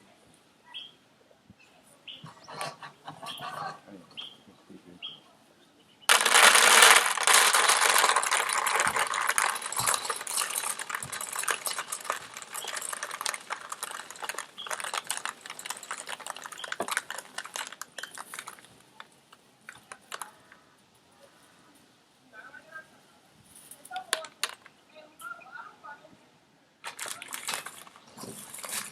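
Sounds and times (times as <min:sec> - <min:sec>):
lentils rattling into feeder: 0:06.1 - 0:18.7, 0:23.9 - 0:24.7, 0:26.8 - 0:28.9.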